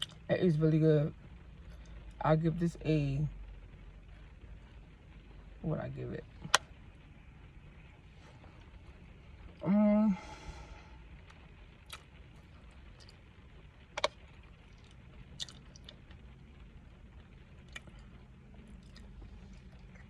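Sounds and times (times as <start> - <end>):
low steady hum: 0.0 - 20.0
person chewing close to microphone: 11.8 - 13.2, 14.0 - 16.2, 17.6 - 20.0
wet mouth clicks and smacks: 11.9 - 12.1, 14.8 - 16.1.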